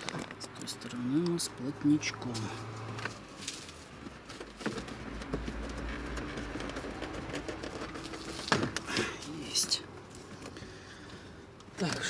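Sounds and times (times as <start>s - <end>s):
plastic clips clicking and scraping: 2.9s - 9.3s.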